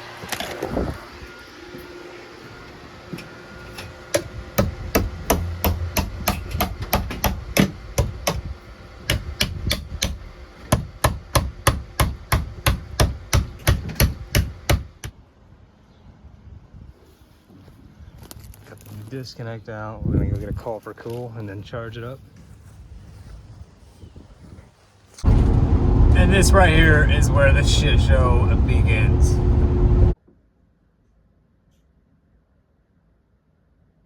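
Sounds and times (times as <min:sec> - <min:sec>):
rapid hammer blows: 0:04.1 - 0:08.4.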